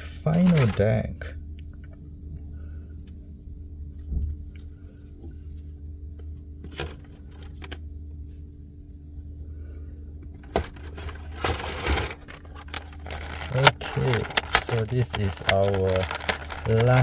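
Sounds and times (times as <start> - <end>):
steady low hum: 0.0 - 17.0
cardboard and plastic rustling: 0.2 - 1.0, 6.6 - 7.8, 10.4 - 17.0.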